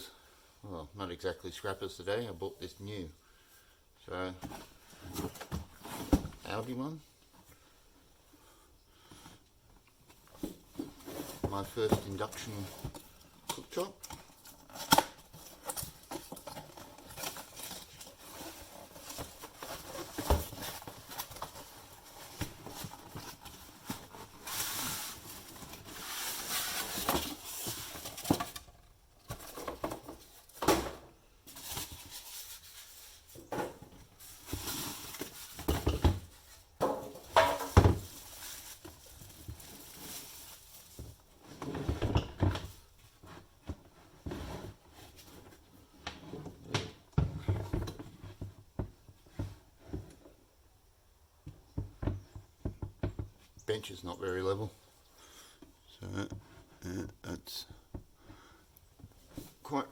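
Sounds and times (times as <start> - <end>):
packaging rustling: 13.8 - 30.6, 31.5 - 41.4.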